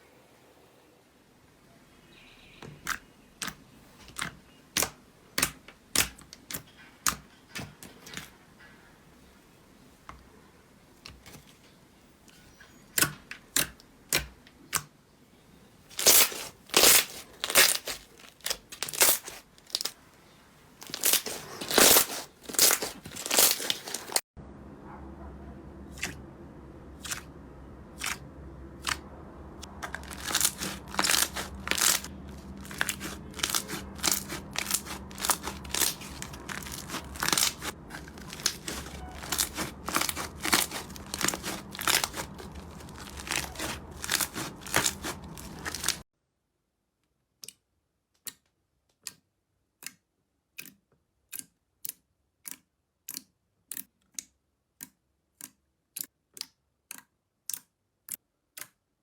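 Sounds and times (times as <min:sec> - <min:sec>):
low steady hum: 0:24.4 - 0:46.0
crisp clicks: 0:29.6 - 0:46.0.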